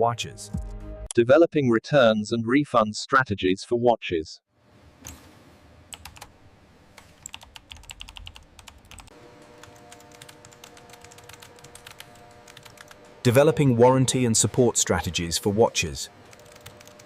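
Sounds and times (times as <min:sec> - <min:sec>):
faint steady hum: 0:04.6 - 0:17.0
typing on keyboard: 0:05.9 - 0:06.3, 0:07.0 - 0:13.0, 0:16.3 - 0:17.0.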